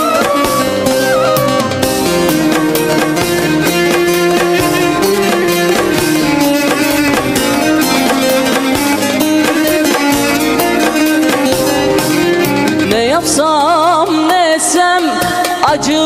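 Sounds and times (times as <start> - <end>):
plucked string melody: 0.0 - 16.0
steady rhythmic backing: 0.0 - 16.0.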